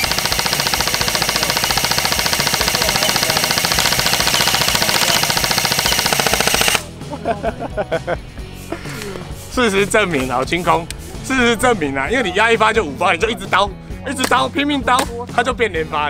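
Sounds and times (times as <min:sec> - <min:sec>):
airsoft gun rapid firing: 0:00.0 - 0:06.9.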